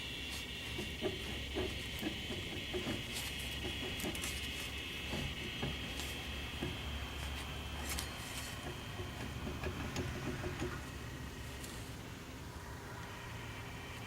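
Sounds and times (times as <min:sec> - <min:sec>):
water pump clicking and knocking: 0:00.7 - 0:11.3.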